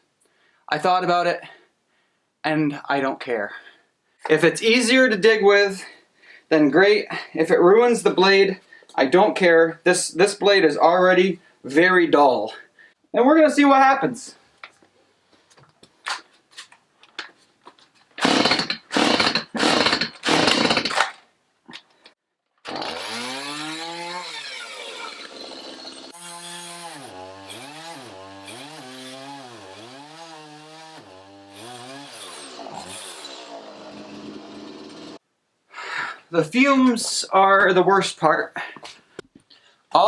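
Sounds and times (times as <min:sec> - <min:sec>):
chainsaw cutting into soil: 0:18.2 - 0:21.1, 0:22.6 - 0:35.2.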